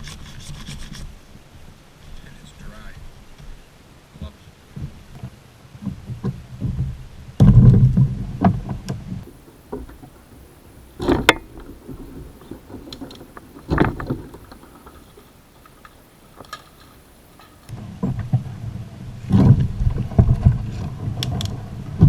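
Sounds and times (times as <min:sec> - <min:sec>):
kayak paddle splashing in water: 0:09.3 - 0:17.7.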